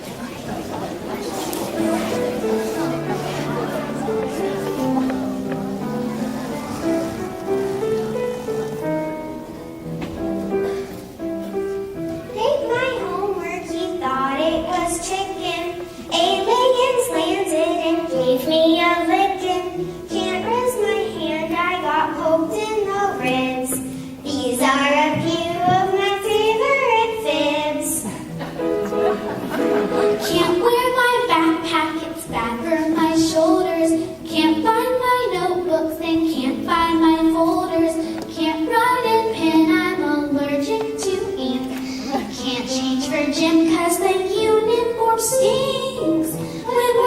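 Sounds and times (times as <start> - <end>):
children singing: 29.0 - 33.9.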